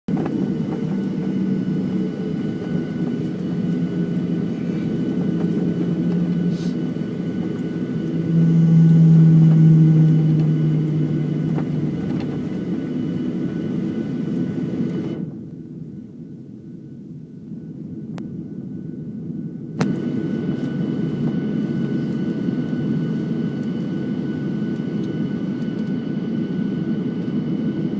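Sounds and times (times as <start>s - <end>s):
jet engine low rumble: 0.1s - 27.9s
jet engine hiss: 0.3s - 15.2s.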